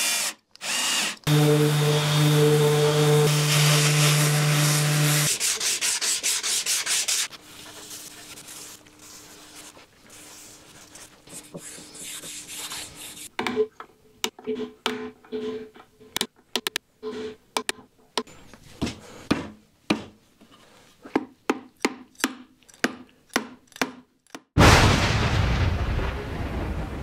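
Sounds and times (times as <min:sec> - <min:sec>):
power tool running: 0:00.0 - 0:05.3
rubbing strokes on wood: 0:01.8 - 0:13.3.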